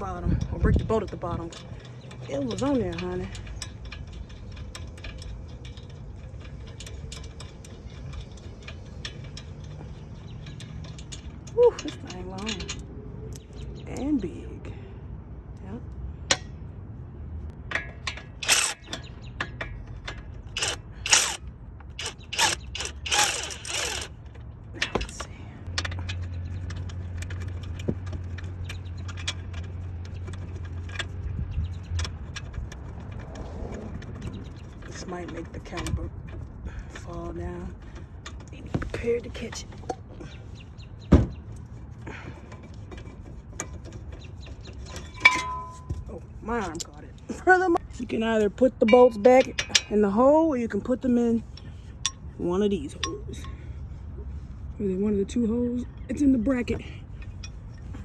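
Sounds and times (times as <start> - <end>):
steady low rumble: 0.0 - 18.7
metallic clicks of hand tools: 17.7 - 24.2.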